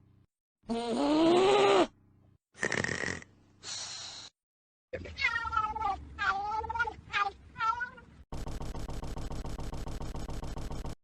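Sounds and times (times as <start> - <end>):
short breathy noisy sounds: 2.6 - 4.4.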